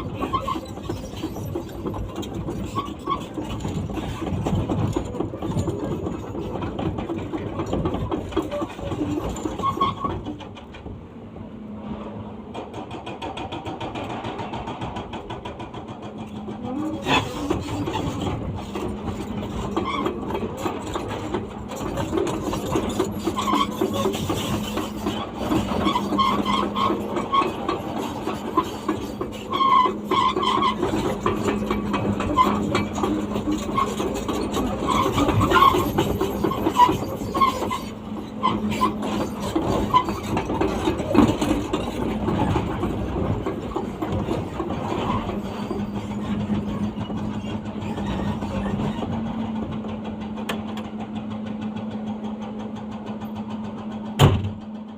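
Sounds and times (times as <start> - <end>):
hydraulic hammer pounding: 12.5 - 54.9.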